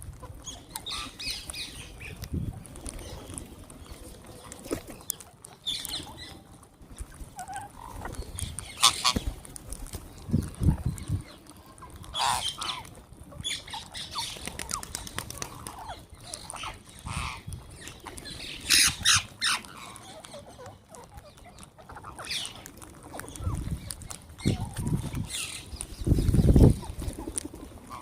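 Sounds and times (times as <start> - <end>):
parrots squawking: 7.4 - 9.2, 12.1 - 14.4, 15.6 - 17.5, 18.3 - 22.6.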